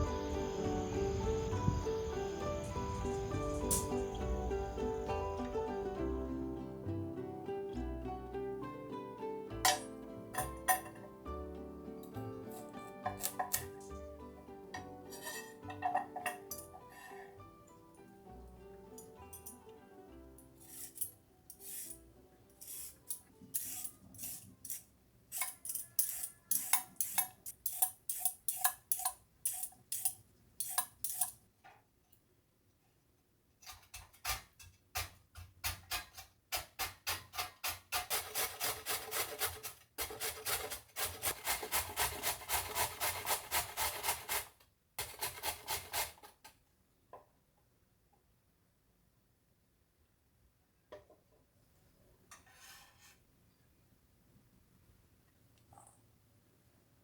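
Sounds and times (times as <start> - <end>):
carrots grated on a grater: 15.1 - 15.6, 20.6 - 22.0, 22.6 - 31.4, 33.7 - 46.4.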